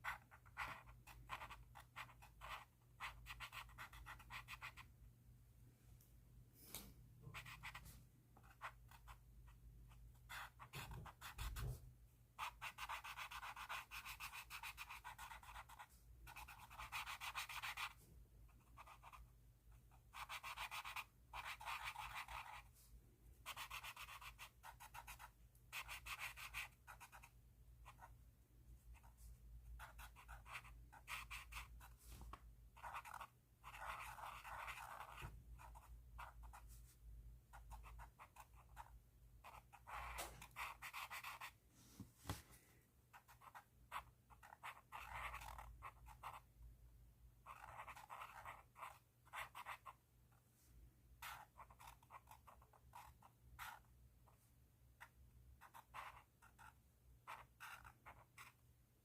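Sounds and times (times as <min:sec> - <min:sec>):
pen scratching on paper: 0:00.0 - 0:04.9, 0:07.2 - 0:09.2, 0:09.9 - 0:11.8, 0:12.4 - 0:28.1, 0:28.9 - 0:41.6, 0:43.1 - 0:46.5, 0:47.4 - 0:50.0, 0:51.2 - 0:53.9, 0:55.0 - 0:58.6.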